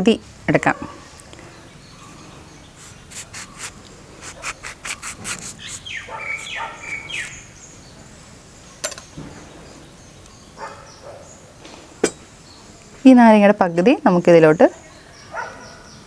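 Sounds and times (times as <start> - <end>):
knife sawing through lemon: 2.8 - 7.4.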